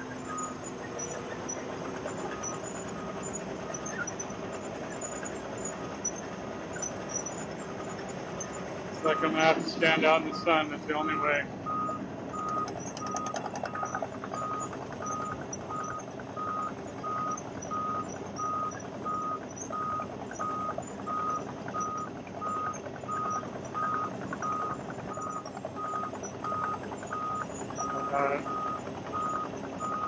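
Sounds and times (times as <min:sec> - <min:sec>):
milling machine rumble: 0:00.0 - 0:30.0
backup alarm beeping: 0:08.5 - 0:30.0.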